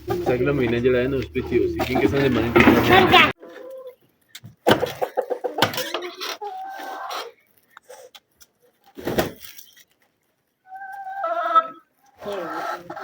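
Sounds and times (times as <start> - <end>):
knocks and bumps: 0.0 - 3.3
hen calling: 0.0 - 3.4.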